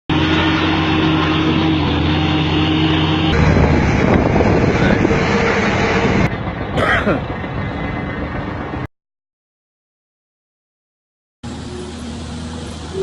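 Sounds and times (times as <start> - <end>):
heavy machine engine running: 0.1 - 8.9, 11.4 - 13.0
engine clattering rattle: 6.1 - 8.9.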